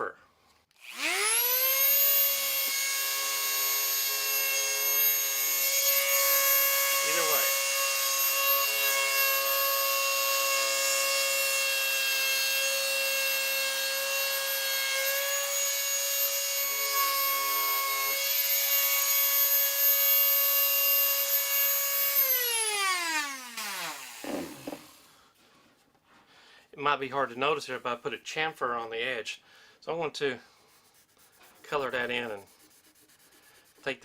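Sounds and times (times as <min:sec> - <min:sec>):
rotary tool whining and rasping: 0:00.7 - 0:25.1, 0:30.5 - 0:34.0
motor spinning down: 0:00.8 - 0:01.8, 0:23.2 - 0:25.0.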